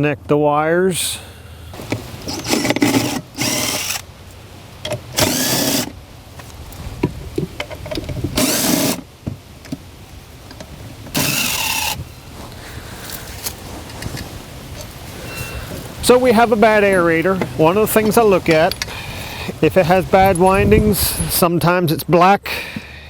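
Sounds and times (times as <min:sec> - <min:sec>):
cordless power drill bursts: 0:01.7 - 0:04.1, 0:05.1 - 0:06.0, 0:08.4 - 0:09.1, 0:11.1 - 0:12.1.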